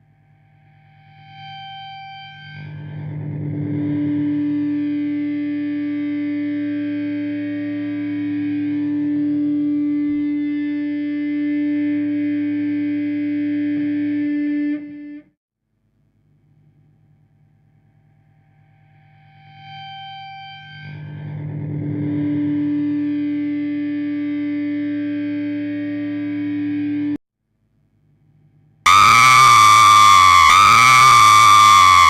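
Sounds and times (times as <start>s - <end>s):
loud droning tone: 28.9s - 32.0s.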